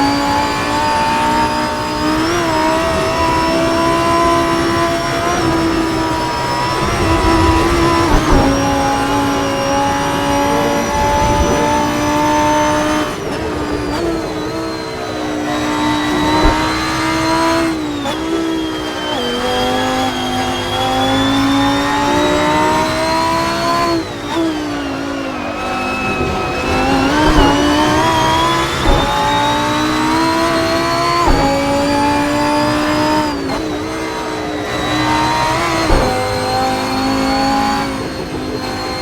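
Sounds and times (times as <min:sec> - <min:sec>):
sports car engine revving: 0:00.0 - 0:39.0.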